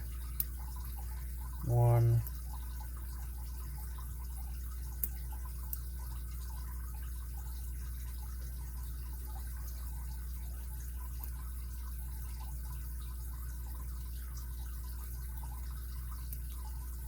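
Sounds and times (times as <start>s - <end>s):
steady low hum: 0.0s - 2.8s.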